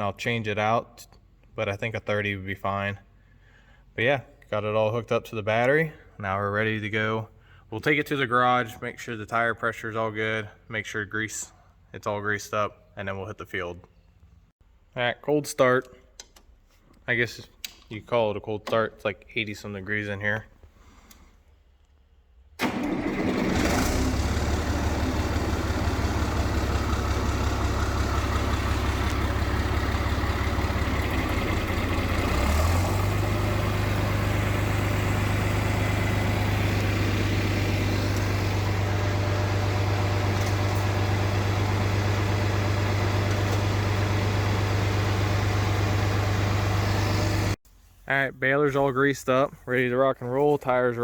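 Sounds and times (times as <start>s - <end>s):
tractor engine idling: 22.6s - 47.6s.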